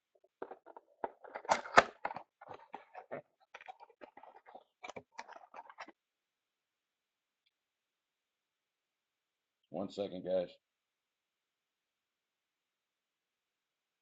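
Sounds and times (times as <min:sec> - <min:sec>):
small clicks and rustles: 0:00.0 - 0:06.0.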